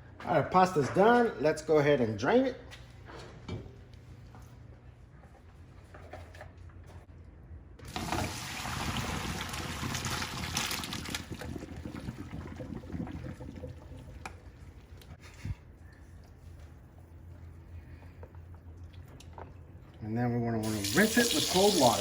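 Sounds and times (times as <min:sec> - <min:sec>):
water pouring into sink: 0:07.9 - 0:14.8, 0:20.6 - 0:22.0.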